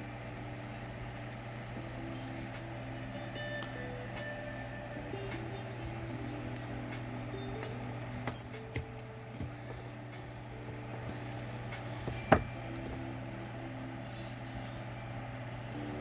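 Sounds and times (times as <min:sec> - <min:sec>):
faint background music: 0:00.0 - 0:16.0
metal earrings clinking: 0:07.6 - 0:09.7, 0:10.6 - 0:11.5.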